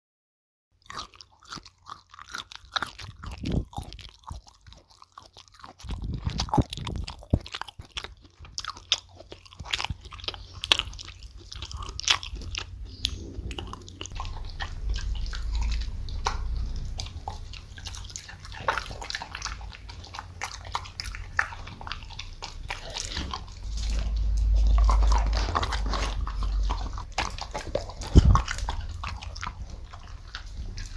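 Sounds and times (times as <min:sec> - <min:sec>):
people chewing crunchily: 0:00.8 - 0:30.9.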